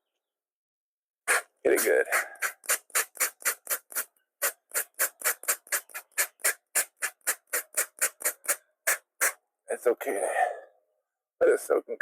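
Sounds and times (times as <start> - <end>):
spray bottle squirting water: 1.3 - 9.4.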